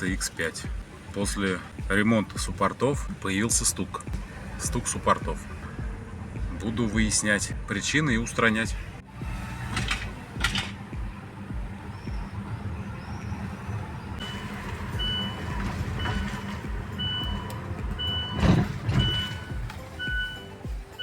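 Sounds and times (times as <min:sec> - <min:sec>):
vehicle engine rumbling: 0:00.0 - 0:21.0
electronic warning beeps: 0:14.1 - 0:21.0.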